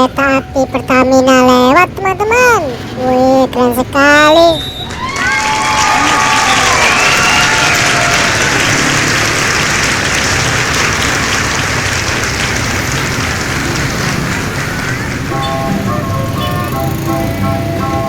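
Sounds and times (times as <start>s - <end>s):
crowd applauding: 4.6s - 18.0s.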